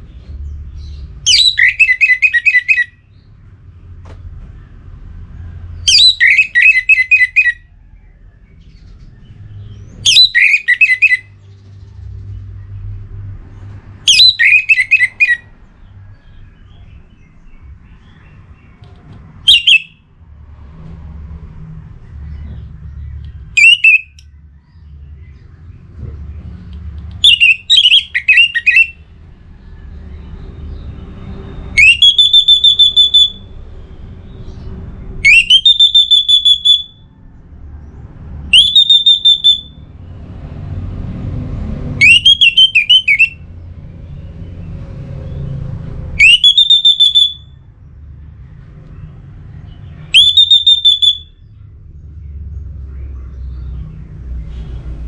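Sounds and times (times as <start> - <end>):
thrush trilled calls: 1.3 - 3.0, 5.8 - 7.6, 10.0 - 11.4, 14.1 - 15.5, 19.4 - 20.0, 23.5 - 24.2, 27.2 - 29.0, 31.7 - 33.6, 35.2 - 37.0, 38.5 - 39.8, 42.0 - 43.4, 46.2 - 47.5, 50.0 - 51.4.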